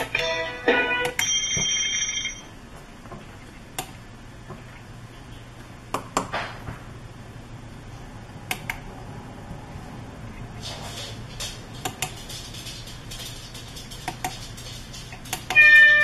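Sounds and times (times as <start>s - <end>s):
electronic doorbell chime: 0.2s - 2.5s, 15.6s - 16.0s
sharp clicks: 8.5s - 8.8s.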